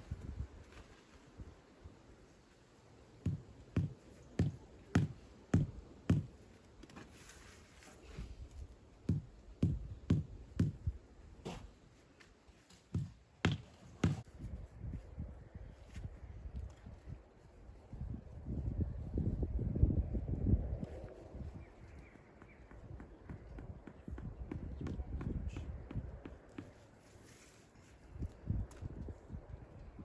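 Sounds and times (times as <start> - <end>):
hammering dull thuds: 3.2 - 6.3, 9.1 - 11.6, 12.9 - 14.3.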